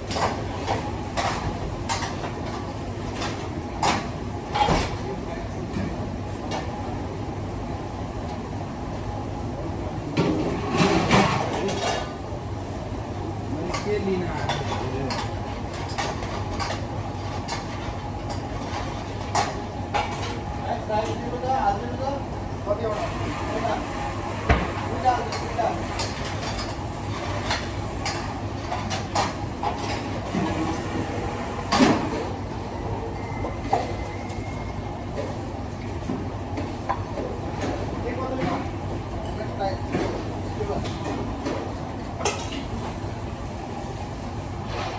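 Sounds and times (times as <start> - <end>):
low kitchen hum: 0.0 - 44.9
utensils and dishes clattering: 10.3 - 12.2, 42.2 - 42.7.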